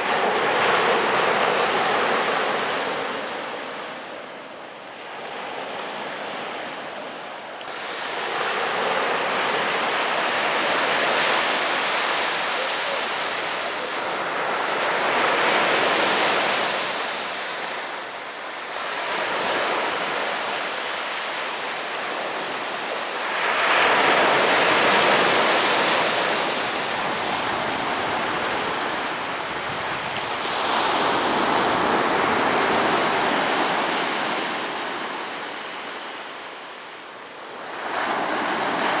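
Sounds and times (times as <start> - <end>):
ocean waves breaking on beach: 0.0 - 39.0.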